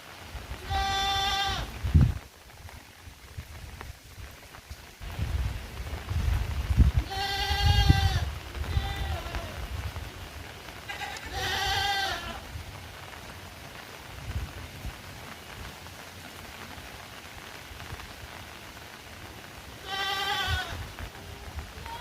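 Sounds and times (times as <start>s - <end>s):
steady rain: 0.0s - 22.0s
farm animal bleating: 0.6s - 1.7s, 7.0s - 9.6s, 10.9s - 12.4s, 19.8s - 22.0s.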